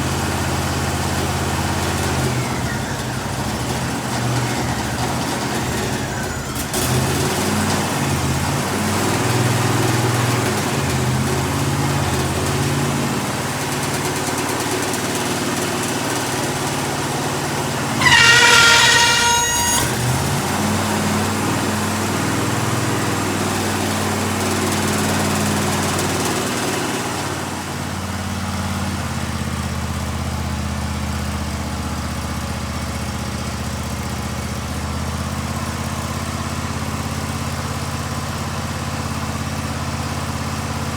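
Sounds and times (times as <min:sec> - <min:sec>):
sawmill engine running: 0:00.0 - 0:40.9
loud high-pitched whine: 0:18.0 - 0:20.3.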